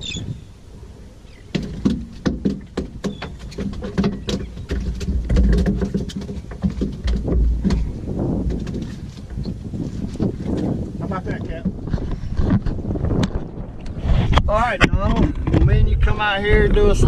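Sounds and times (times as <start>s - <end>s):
wind rumble on microphone: 0.0s - 17.0s
knocks and slaps on a boat: 1.4s - 13.4s.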